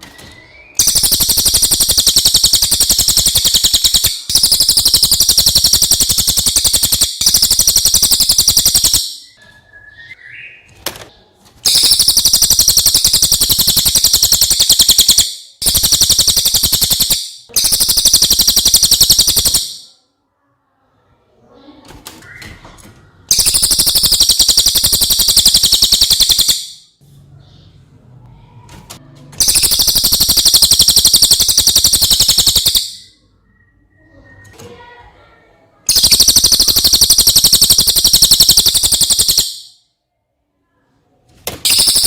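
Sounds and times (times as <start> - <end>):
bird song with buzzy trills: 0.0 - 19.9, 23.3 - 27.9, 29.4 - 34.5, 35.9 - 39.9, 41.6 - 42.0.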